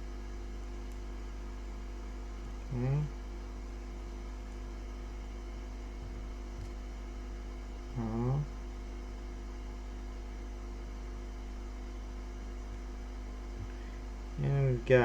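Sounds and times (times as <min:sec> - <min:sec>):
low electrical mains hum: 0:00.0 - 0:15.0
person's short voiced sound: 0:02.7 - 0:03.1, 0:08.0 - 0:08.5.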